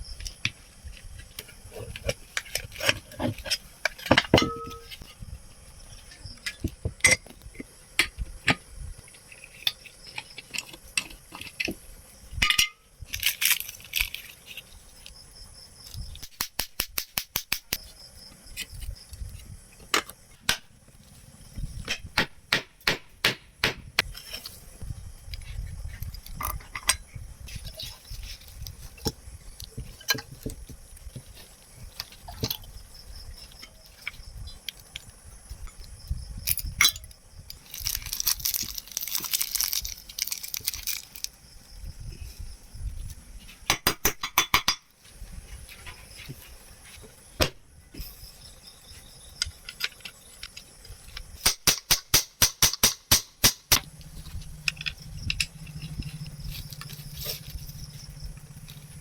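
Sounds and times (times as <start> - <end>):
tools tapping on metal: 3.9 - 5.1, 12.4 - 12.8, 43.7 - 44.9.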